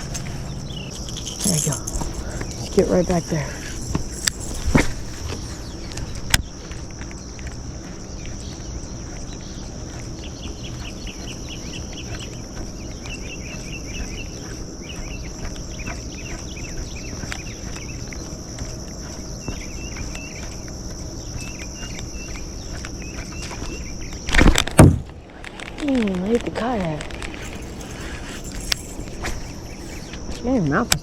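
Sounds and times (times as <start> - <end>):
short chirping calls: 0.0 - 7.4
high-pitched insect drone: 0.0 - 24.4, 25.5 - 31.0.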